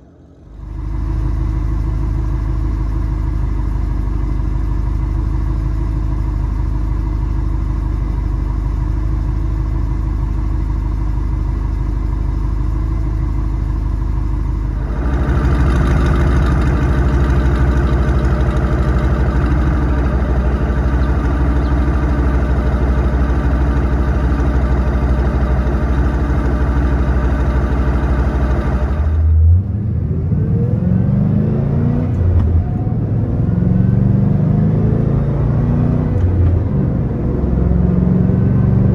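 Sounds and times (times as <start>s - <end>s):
car engine exhaust revving: 14.5s - 38.9s.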